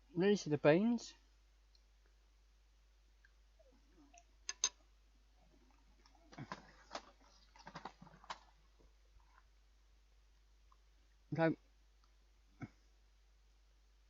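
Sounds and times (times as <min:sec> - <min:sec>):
sharp clicks: 0:04.5 - 0:04.8
light clicks and rustling: 0:05.7 - 0:08.6.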